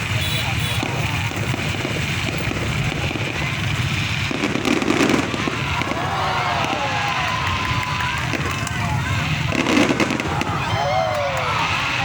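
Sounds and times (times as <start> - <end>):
fireworks crackling pops: 0.0 - 12.0.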